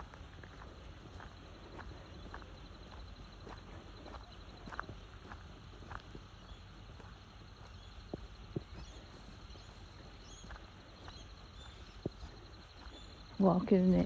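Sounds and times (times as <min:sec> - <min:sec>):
footsteps on a bush track: 0:00.0 - 0:14.0
faint bird chirps: 0:06.3 - 0:14.0.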